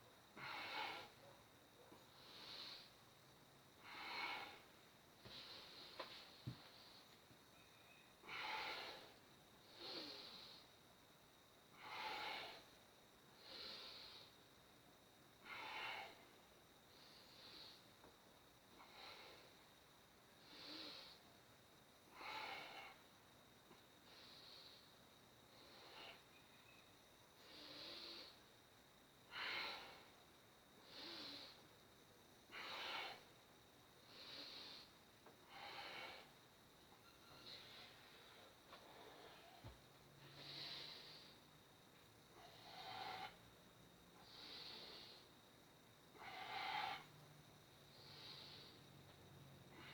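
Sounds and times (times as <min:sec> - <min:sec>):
faint nasal breathing: 0:02.2 - 0:03.0, 0:03.8 - 0:07.2, 0:08.2 - 0:10.7, 0:30.8 - 0:31.7, 0:34.0 - 0:36.4, 0:37.2 - 0:41.6, 0:42.4 - 0:43.5, 0:44.2 - 0:45.4, 0:47.9 - 0:49.9
person breathing deeply: 0:37.4 - 0:41.5, 0:44.2 - 0:45.4, 0:47.9 - 0:49.0.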